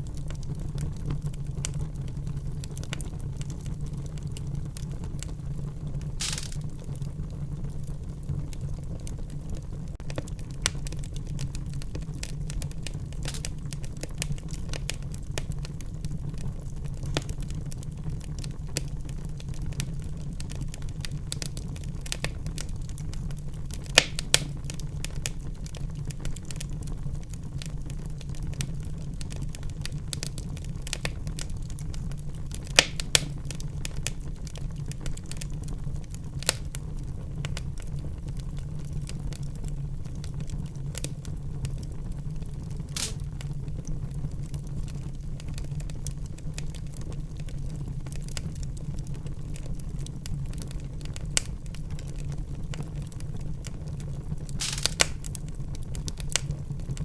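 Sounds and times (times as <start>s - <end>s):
low rumble of flames: 0.0s - 57.0s
wood fire crackling: 0.0s - 57.0s
sharp pops: 6.2s - 6.6s, 43.0s - 43.2s, 54.6s - 55.3s.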